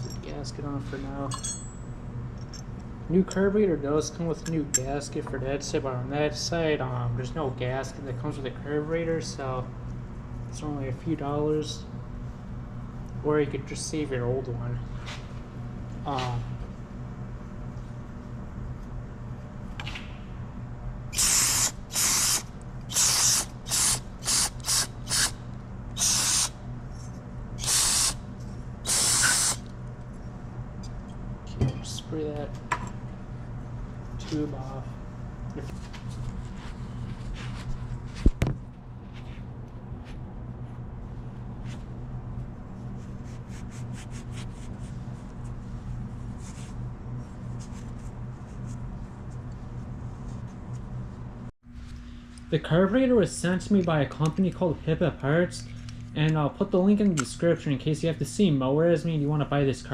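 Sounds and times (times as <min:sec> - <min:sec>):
steady low hum: 0:00.0 - 0:59.9
short hissing spray bursts: 0:21.2 - 0:25.3, 0:26.0 - 0:26.5, 0:27.6 - 0:28.2, 0:28.9 - 0:29.6.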